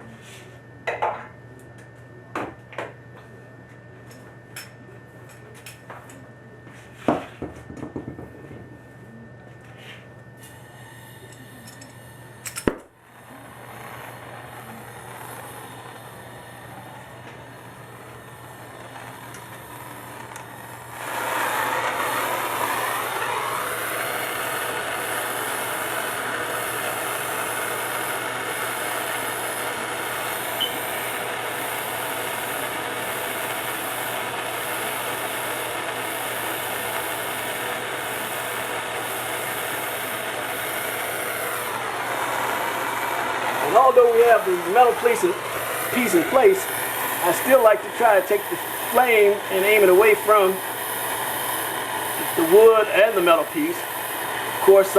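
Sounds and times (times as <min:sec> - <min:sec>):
gas torch hissing: 0:09.8 - 0:54.9
torch igniter clicks: 0:11.3 - 0:13.0, 0:17.2 - 0:20.8, 0:28.9 - 0:31.8.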